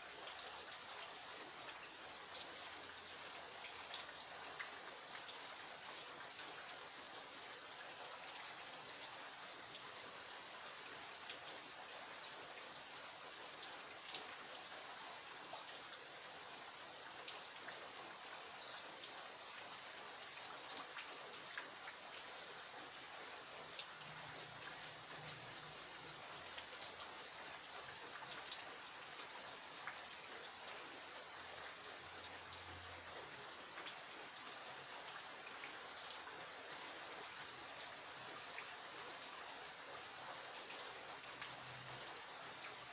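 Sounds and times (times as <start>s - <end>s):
rain drops on hard surface: 0.0s - 42.9s.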